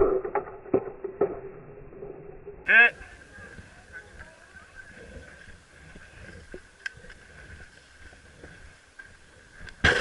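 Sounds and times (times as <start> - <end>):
faint clicks: 6.2 - 9.8.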